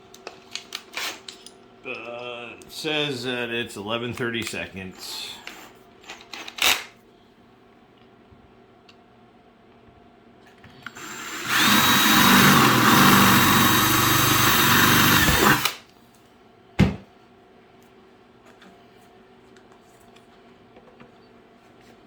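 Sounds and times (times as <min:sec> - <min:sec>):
power drill whining: 0:11.0 - 0:15.8.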